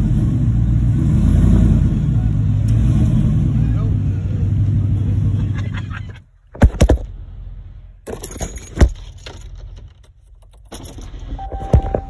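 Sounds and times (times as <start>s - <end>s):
metallic jangling rattle: 8.1s - 12.0s.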